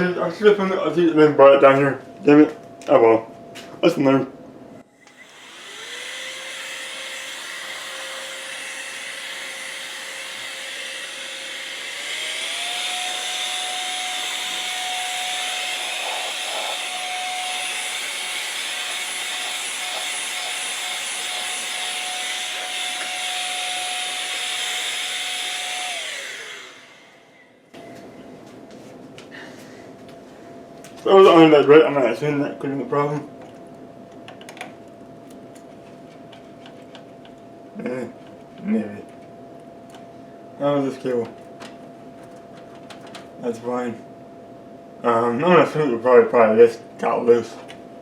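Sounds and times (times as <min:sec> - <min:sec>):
electric fan motor whining: 0:04.9 - 0:28.2.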